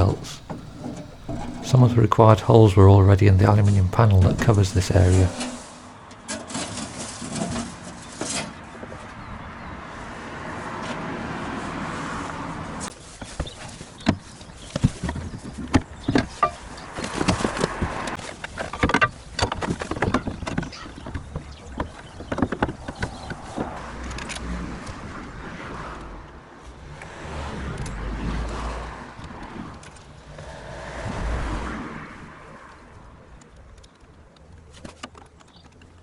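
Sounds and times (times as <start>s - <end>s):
metal knocks clicks and rattles: 0.0s - 5.6s.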